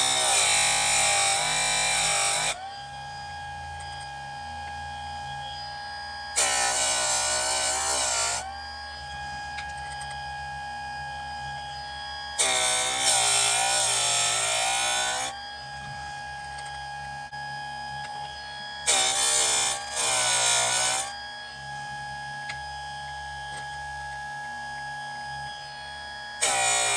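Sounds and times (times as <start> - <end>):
grinding wheel rasping on chain: 0.0 - 10.2, 12.1 - 16.9, 18.8 - 21.2, 26.4 - 26.9
sharpener motor whining: 0.0 - 26.9.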